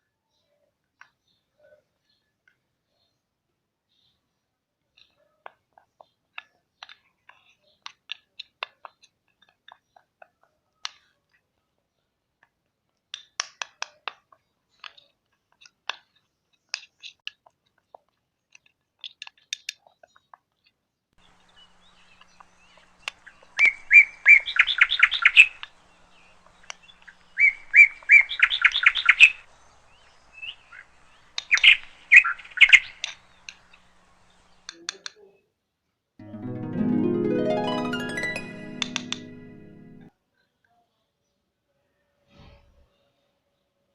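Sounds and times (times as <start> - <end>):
small bird chirping: 21.2 - 34.8.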